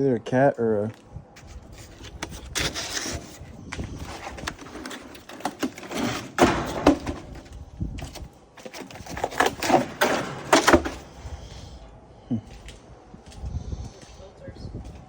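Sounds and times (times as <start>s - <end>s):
knocks scrapes and clatter: 1.4s - 11.5s.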